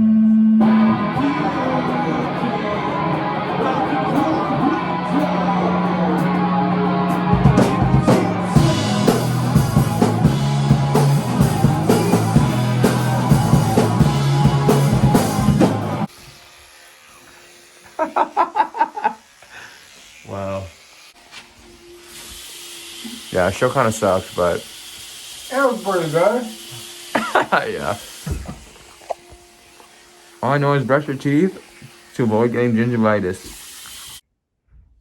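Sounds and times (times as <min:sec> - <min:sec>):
bass guitar: 0:00.0 - 0:16.1
electric guitar: 0:00.0 - 0:16.1
drum kit: 0:00.6 - 0:16.1
person's voice: 0:00.9 - 0:06.5, 0:30.4 - 0:31.6, 0:32.2 - 0:33.5.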